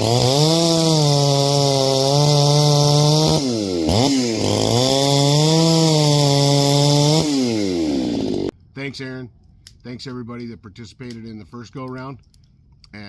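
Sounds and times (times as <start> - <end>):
chainsaw revving: 0.0 - 8.5.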